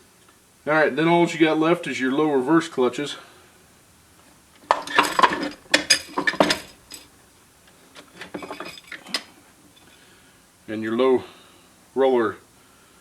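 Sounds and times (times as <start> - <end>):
steel parts clinking and knocking: 4.6 - 7.2, 8.0 - 9.3.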